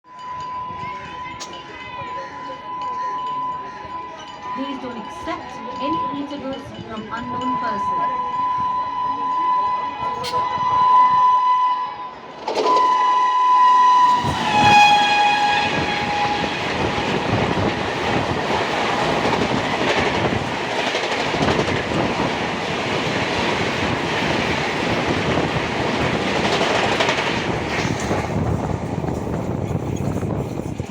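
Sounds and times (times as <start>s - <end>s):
train coaches rushing past: 0.2s - 30.9s
train horn: 7.3s - 18.3s.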